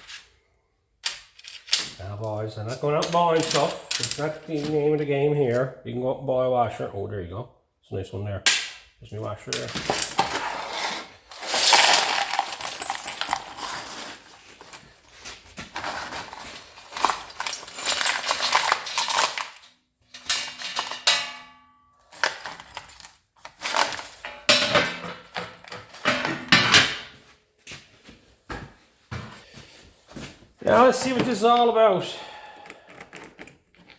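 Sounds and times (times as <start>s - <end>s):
metal hardware clattering: 1.0s - 5.1s, 9.5s - 10.7s, 11.3s - 27.0s, 30.7s - 33.9s.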